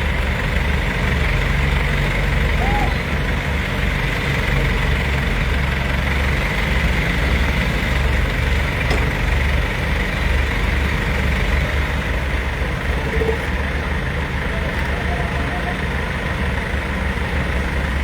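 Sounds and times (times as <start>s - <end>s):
diesel engine idling: 0.0s - 18.0s.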